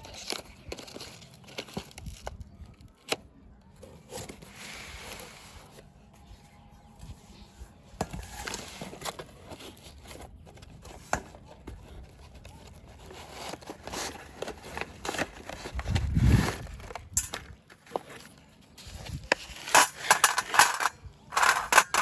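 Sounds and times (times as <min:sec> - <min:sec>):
packaging crinkling and tearing: 0:00.0 - 0:03.2.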